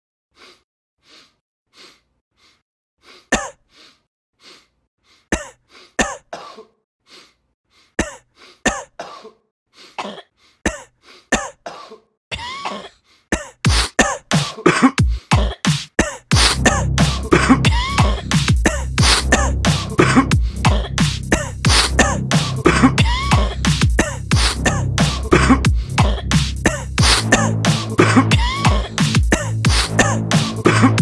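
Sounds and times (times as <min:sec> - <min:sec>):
person coughing: 0:03.4 - 0:03.6, 0:05.4 - 0:06.8, 0:08.0 - 0:09.4, 0:10.0 - 0:31.0.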